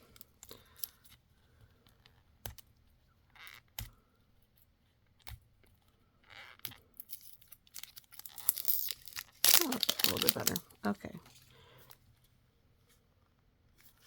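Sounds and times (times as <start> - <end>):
plastic packet crinkling: 7.2 - 11.5.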